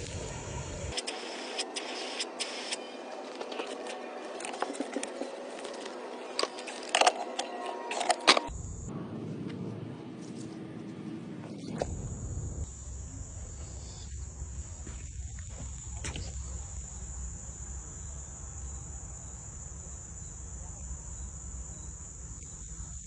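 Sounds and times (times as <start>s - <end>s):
insects chirring: 8.4s - 8.9s, 11.6s - 23.0s
low rumble: 11.4s - 13.6s.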